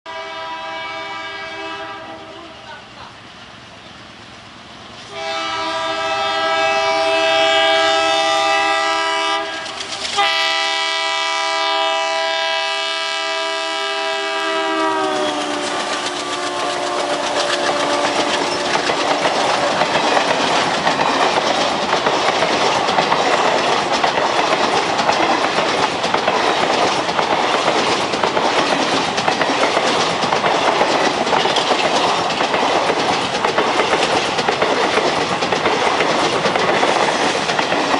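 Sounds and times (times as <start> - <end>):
locomotive horn blasts: 0.1 - 2.5, 5.1 - 18.8
train wheels clickety-clack: 4.9 - 37.9.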